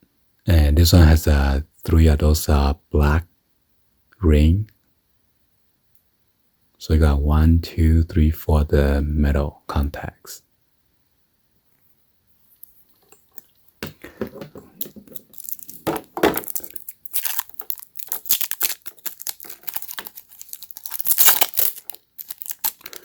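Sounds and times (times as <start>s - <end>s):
packaging crinkling and tearing: 14.8s - 23.0s.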